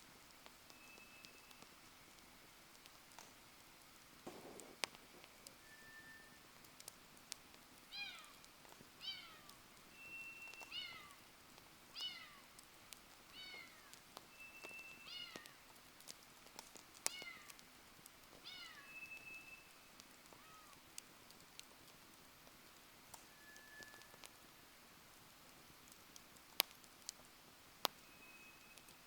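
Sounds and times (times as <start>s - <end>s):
campfire crackling: 0.0s - 29.0s
distant cat meowing: 9.0s - 9.5s, 10.7s - 11.2s, 12.0s - 12.5s, 13.4s - 13.9s, 15.0s - 15.6s, 18.4s - 18.9s, 20.3s - 20.8s.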